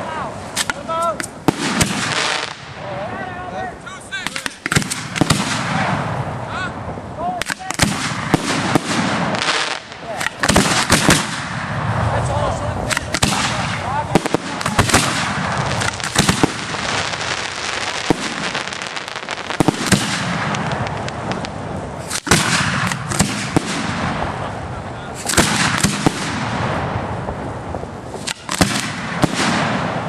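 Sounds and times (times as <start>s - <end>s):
fireworks bangs: 0.0s - 3.2s, 4.2s - 30.0s
fireworks crackling: 0.0s - 30.0s.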